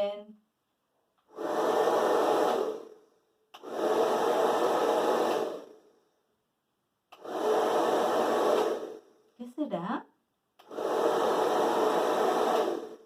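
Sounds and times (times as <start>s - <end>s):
hair dryer blowing: 1.2s - 3.0s, 3.6s - 5.8s, 7.1s - 9.1s, 10.6s - 13.0s.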